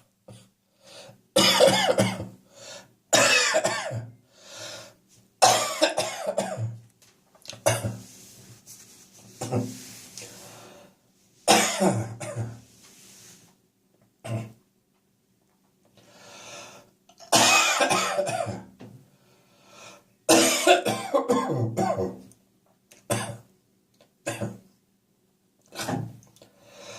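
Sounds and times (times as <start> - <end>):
person coughing: 1.4 - 2.4, 3.1 - 4.1, 5.4 - 6.8, 7.6 - 8.0, 11.5 - 12.6, 17.2 - 18.7, 20.3 - 22.2, 23.1 - 23.5, 25.7 - 26.2.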